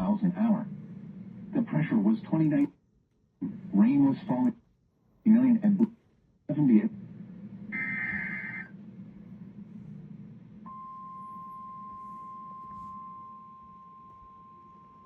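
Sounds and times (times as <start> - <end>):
faint radio hum: 0.0 - 2.8, 3.4 - 4.6, 5.2 - 13.5
steady alarm tone: 7.7 - 9.9, 10.5 - 15.0
screeching digital data burst: 7.8 - 8.7.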